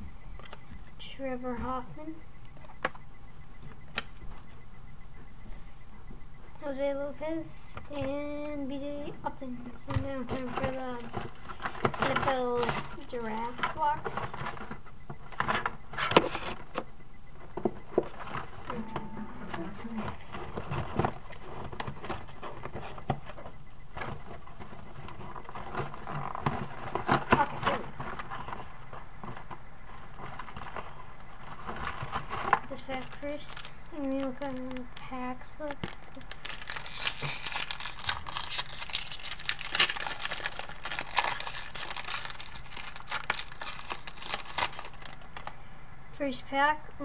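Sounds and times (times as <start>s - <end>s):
card packs clicking and rustling: 10.0s - 16.6s, 17.6s - 45.6s.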